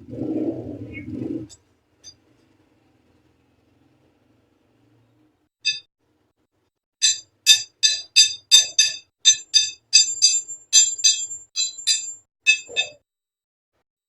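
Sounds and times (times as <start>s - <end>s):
hammer striking iron: 7.0s - 12.9s.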